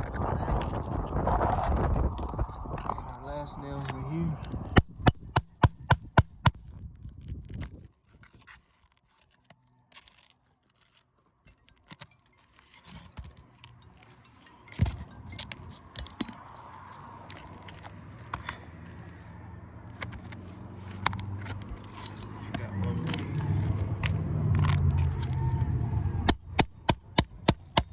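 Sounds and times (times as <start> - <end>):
hand tools scraping and tapping: 4.8 - 6.6, 11.7 - 27.9
sharp knock: 4.8 - 6.6.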